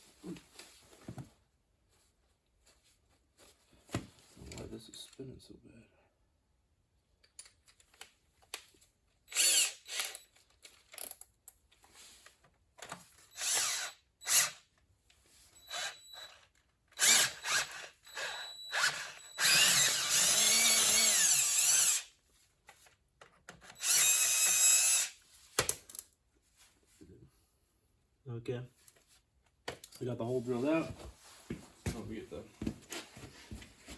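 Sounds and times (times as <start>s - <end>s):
electric drill in short bursts: 9.3s - 10.3s, 13.3s - 14.6s, 15.6s - 16.4s, 17.0s - 22.1s, 23.7s - 25.2s.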